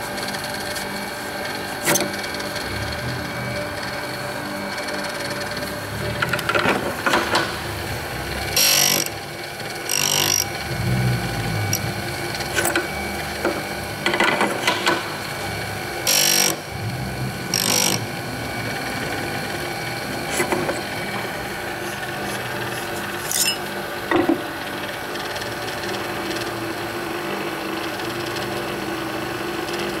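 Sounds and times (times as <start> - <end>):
drill grinder motor hum: 0.1 - 14.1, 15.2 - 24.6
harsh grinding bursts: 1.4 - 13.8, 15.5 - 23.8.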